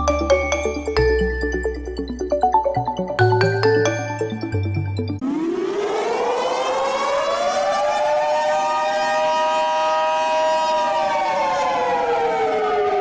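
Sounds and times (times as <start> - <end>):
siren wailing: 5.2 - 13.0.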